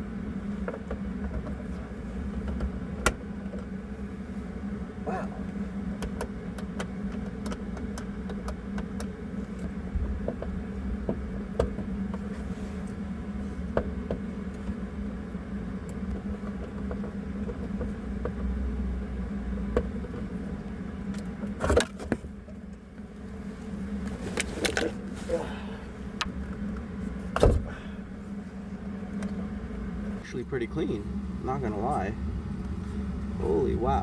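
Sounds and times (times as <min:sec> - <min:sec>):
engine-like hum and rumble: 0:00.0 - 0:34.0
hand tools clicking on car parts: 0:06.0 - 0:12.3.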